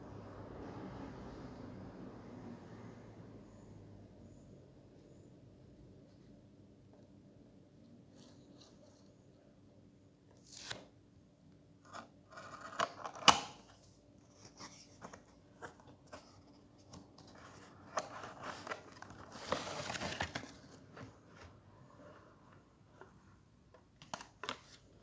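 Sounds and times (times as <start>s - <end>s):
packaging rustling and crinkling: 17.2s - 21.1s.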